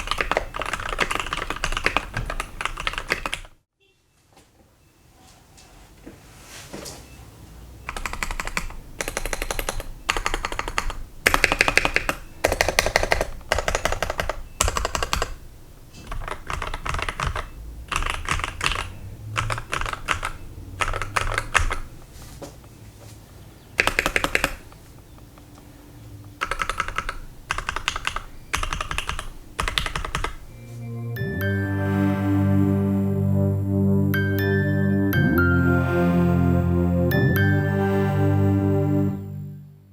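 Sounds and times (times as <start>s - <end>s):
mechanical keyboard typing: 0.0s - 3.6s, 7.9s - 22.1s, 23.8s - 25.4s, 26.3s - 30.6s.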